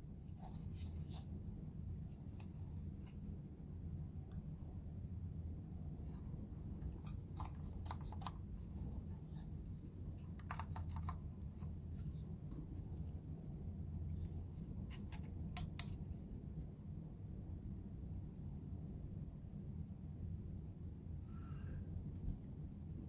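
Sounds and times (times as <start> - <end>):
battery and packaging handling: 6.1 - 12.8.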